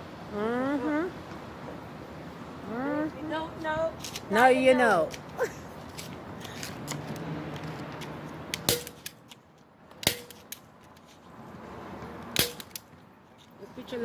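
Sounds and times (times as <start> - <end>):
city background: 0.0 - 14.0.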